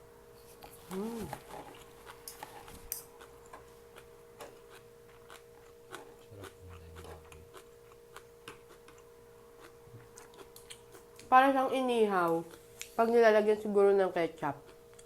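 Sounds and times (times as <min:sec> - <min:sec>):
faint steady hum: 0:00.0 - 0:15.0
chewing clicks and smacks: 0:01.7 - 0:11.3.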